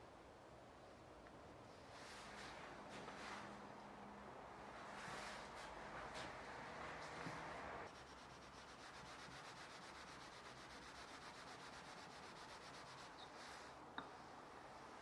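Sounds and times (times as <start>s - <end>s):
blade rubbing on whetstone: 8.0s - 13.6s.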